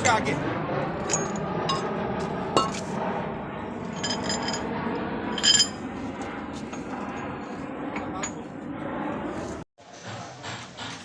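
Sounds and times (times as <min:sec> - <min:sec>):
metal objects clinking: 0:03.9 - 0:04.7, 0:05.4 - 0:05.8.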